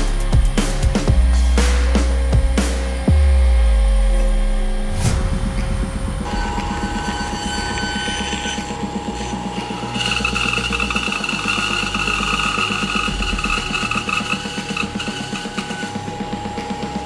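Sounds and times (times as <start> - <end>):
woodworking machine whining: 6.0 - 17.0.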